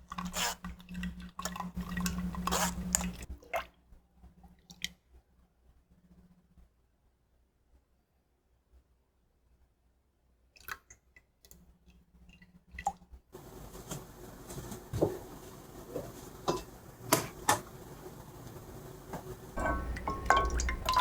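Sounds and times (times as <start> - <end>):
steady hiss: 13.4 - 20.9.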